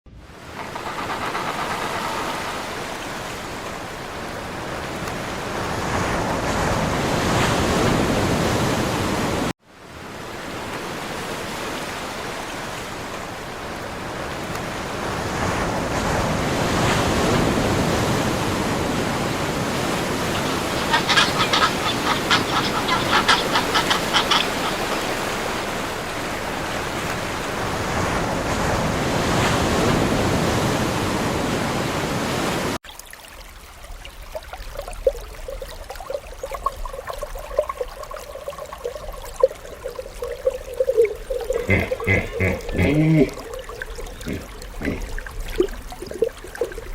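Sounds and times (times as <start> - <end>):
surf washing on shore: 0.2 - 32.8, 35.0 - 46.9
penguin braying: 20.0 - 25.2, 41.3 - 45.2.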